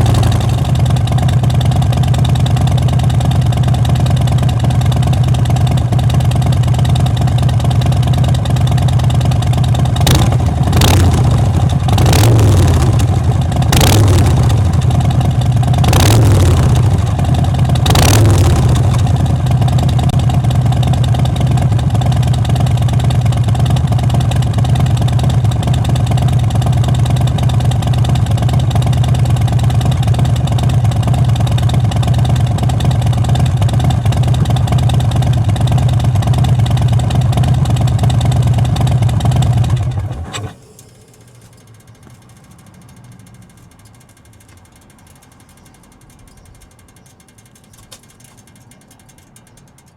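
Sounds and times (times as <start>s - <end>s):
motorcycle engine idling and revving: 0.0s - 49.9s.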